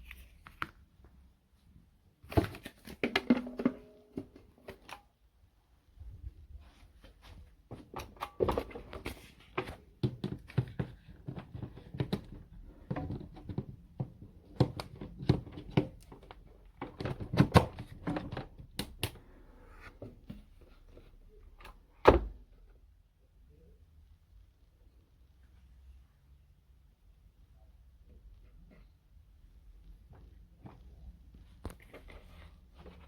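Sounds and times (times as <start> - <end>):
knocks and clicks of handling: 7.7 - 19.2.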